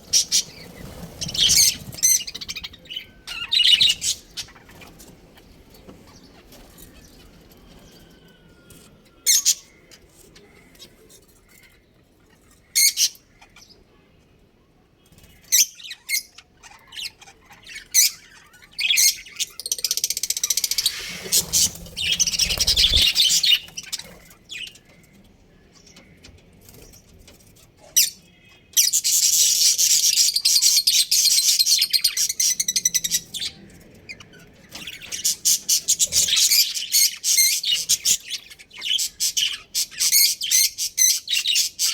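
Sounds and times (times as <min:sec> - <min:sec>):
budgerigars chirping: 0:00.1 - 0:05.6, 0:15.9 - 0:24.7.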